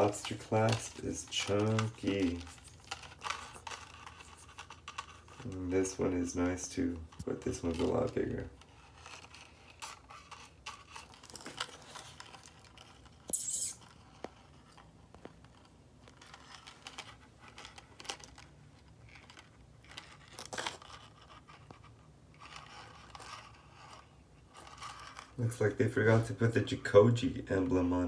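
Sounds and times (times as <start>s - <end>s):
chain bracelets rustling in hand: 9.0s - 14.0s.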